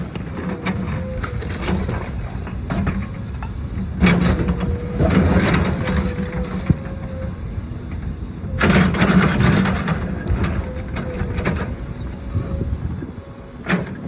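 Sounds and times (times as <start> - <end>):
backhoe engine running: 0.0 - 14.0.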